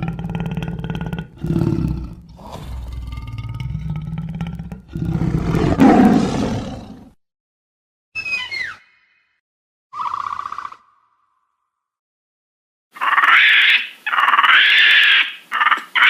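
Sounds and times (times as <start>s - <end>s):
large animal roaring: 0.0s - 7.2s.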